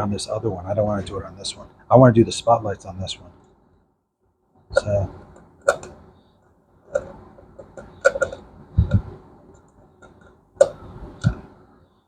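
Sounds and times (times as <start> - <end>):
small parts clicking: 6.9 - 11.4.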